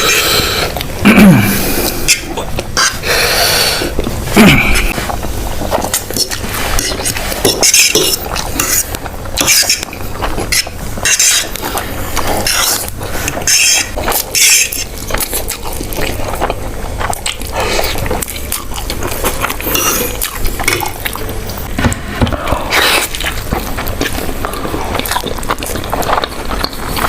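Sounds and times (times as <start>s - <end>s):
noodle slurping: 1.6s - 21.5s
chewing: 3.8s - 27.0s.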